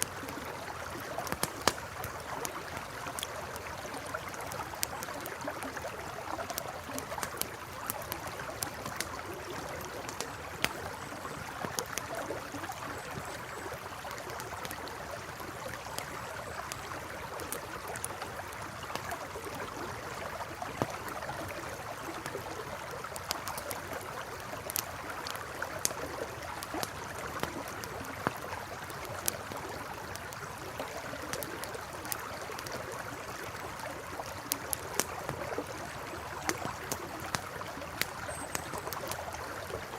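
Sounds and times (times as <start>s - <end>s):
campfire crackling and popping: 0.0s - 39.9s
river flowing: 0.0s - 39.9s.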